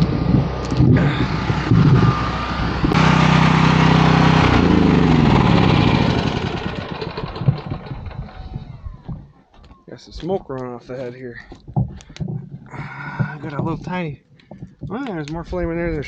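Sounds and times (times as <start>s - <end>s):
generator engine winding down: 0.0s - 9.8s.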